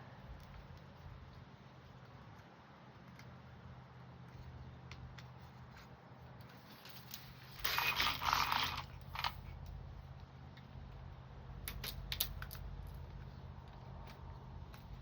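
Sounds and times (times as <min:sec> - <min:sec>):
steady low hum: 0:00.0 - 0:15.0
light sharp clicks and taps: 0:00.2 - 0:06.6
scraping a metal window screen: 0:05.7 - 0:09.6.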